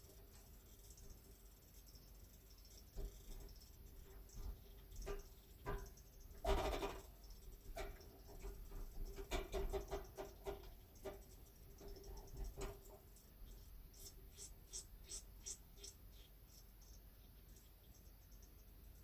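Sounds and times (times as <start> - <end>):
clicks taps and rattles: 0.0 - 14.5
washing machine hum: 0.0 - 19.0.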